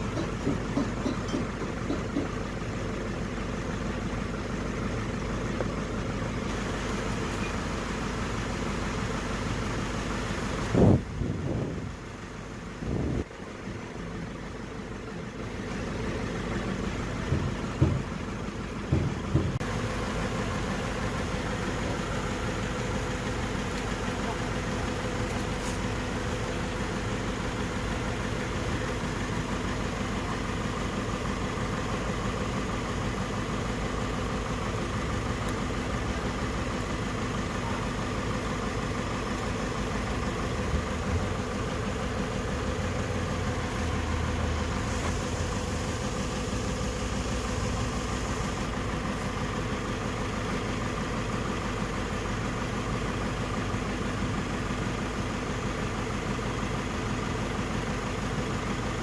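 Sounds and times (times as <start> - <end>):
car engine idling: 0.0 - 59.0.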